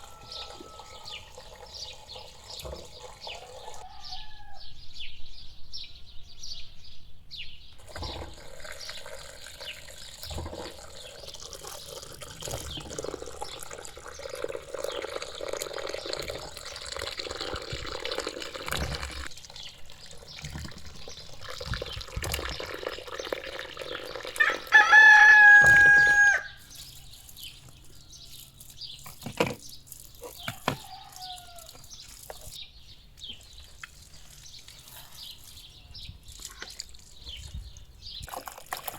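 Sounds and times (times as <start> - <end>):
rooster crowing: 0.0 - 1.5, 3.3 - 4.8, 24.4 - 26.6, 30.4 - 31.8.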